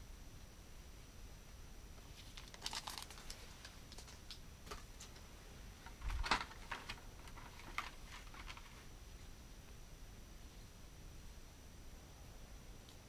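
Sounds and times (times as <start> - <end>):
plastic packaging crinkling: 2.2 - 5.2, 5.8 - 8.9.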